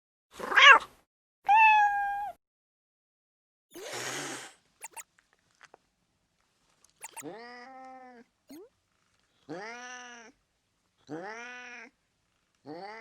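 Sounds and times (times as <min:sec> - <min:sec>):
cat meowing: 0:01.5 - 0:02.4, 0:07.0 - 0:08.7
cat hissing: 0:03.7 - 0:05.0, 0:07.0 - 0:07.4.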